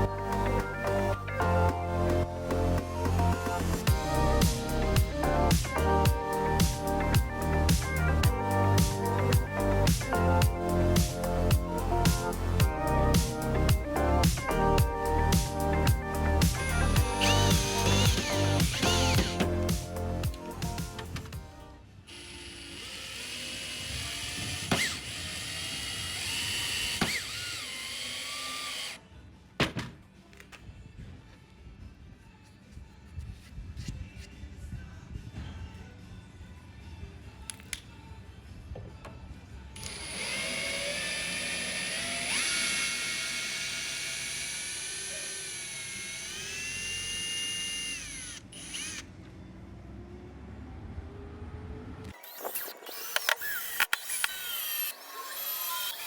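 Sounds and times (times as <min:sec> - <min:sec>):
power tool whining: 0:16.4 - 0:20.8, 0:22.1 - 0:29.0, 0:39.8 - 0:49.1, 0:52.1 - 0:56.0.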